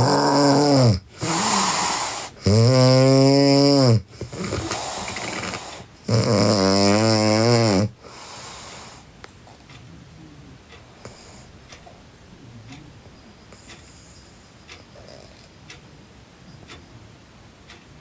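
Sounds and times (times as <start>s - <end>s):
girl snoring: 0.0s - 9.1s
breathing: 4.1s - 5.9s, 8.0s - 9.1s, 11.0s - 11.6s.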